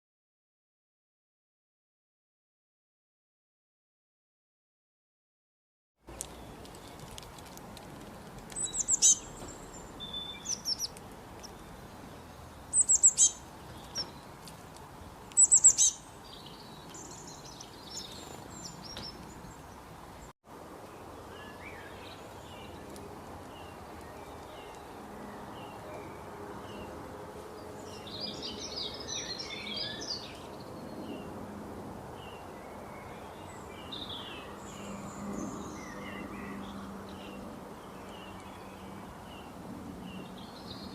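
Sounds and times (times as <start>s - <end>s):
loud sharp high bird calls: 8.6s - 11.7s, 12.7s - 14.2s, 15.4s - 19.6s.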